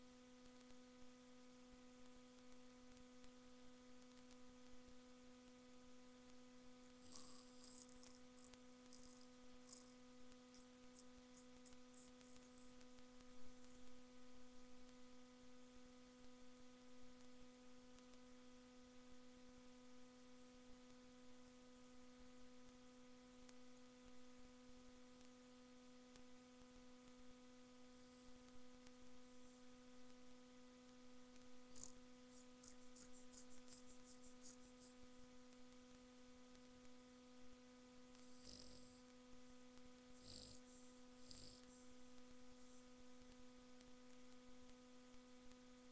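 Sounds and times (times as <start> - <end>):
electrical hum: 0.0 - 45.9
faint rapid high-pitched clicking: 30.0 - 37.0.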